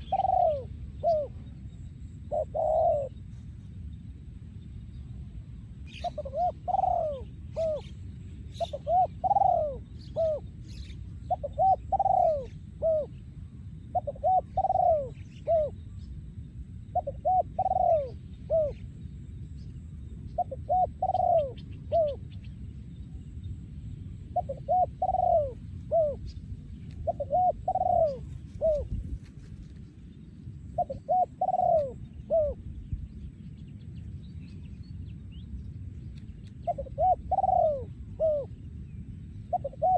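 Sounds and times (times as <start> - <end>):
dove cooing: 0.0 - 1.6, 2.2 - 3.4, 5.9 - 13.2, 13.9 - 15.8, 16.9 - 18.9, 20.3 - 22.4, 24.3 - 29.6, 30.8 - 32.7, 36.6 - 38.7, 39.5 - 39.9
small birds chirping: 0.0 - 3.8
low background noise: 0.0 - 39.9.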